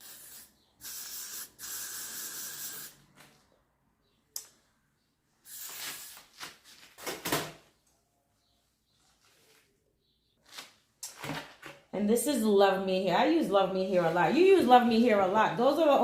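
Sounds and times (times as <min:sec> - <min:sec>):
aerosol spray hissing: 0:00.0 - 0:02.9, 0:05.5 - 0:06.1.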